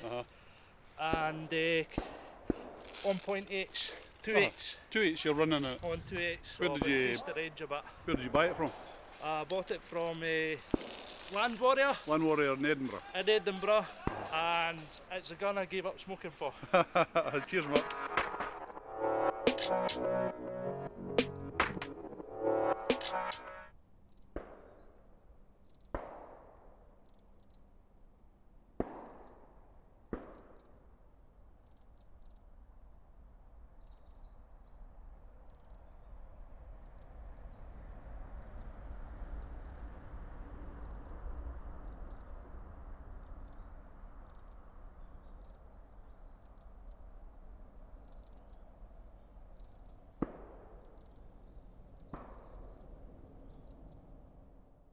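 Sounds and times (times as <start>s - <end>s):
low wind-like rumble: 32.6s - 50.2s.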